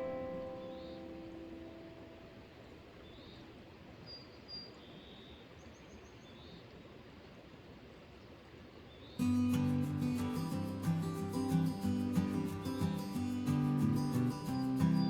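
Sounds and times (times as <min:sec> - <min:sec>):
guitar music: 0:00.0 - 0:02.4, 0:09.2 - 0:15.0
soft outdoor hiss: 0:00.0 - 0:15.0.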